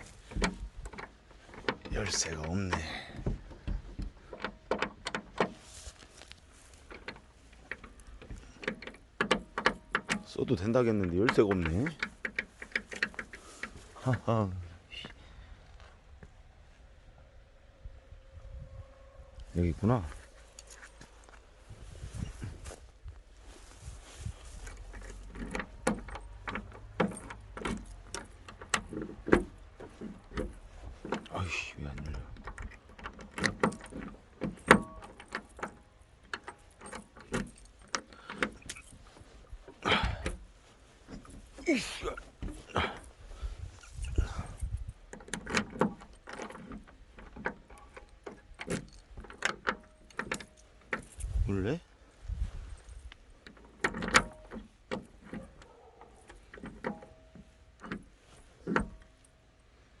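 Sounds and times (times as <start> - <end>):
metal door latch clicking: 0.3 - 5.6, 6.9 - 13.4, 24.9 - 38.9, 45.1 - 51.1, 53.4 - 59.2
key rattling in a lock: 24.6 - 39.3, 43.8 - 51.4, 52.8 - 58.0.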